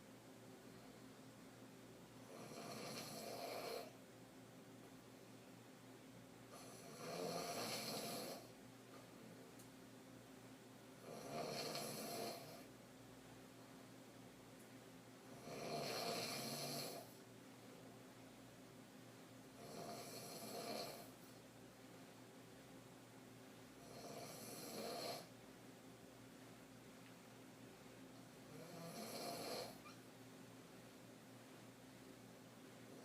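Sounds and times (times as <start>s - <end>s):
woman snoring: 2.2s - 4.0s, 6.6s - 8.5s, 11.0s - 12.7s, 15.3s - 17.1s, 19.6s - 21.2s, 23.8s - 25.3s, 28.5s - 30.0s.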